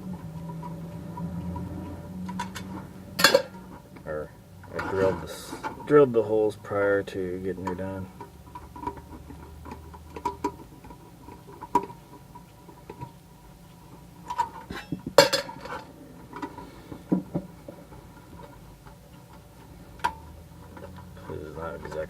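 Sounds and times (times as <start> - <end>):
metallic clank: 1.5 - 3.8, 14.2 - 16.7
sheet metal parts clinking: 2.3 - 3.8, 14.3 - 16.6.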